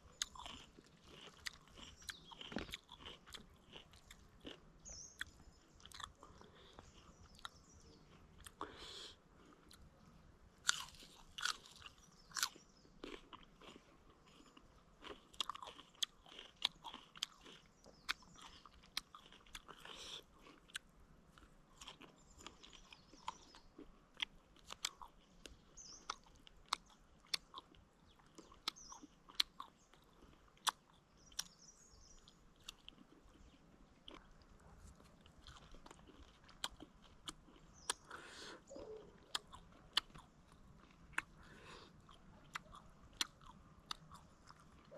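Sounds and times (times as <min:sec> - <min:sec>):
person chewing and crunching: 0:00.0 - 0:10.0, 0:10.6 - 0:44.9
mouth clicks: 0:35.4 - 0:44.9.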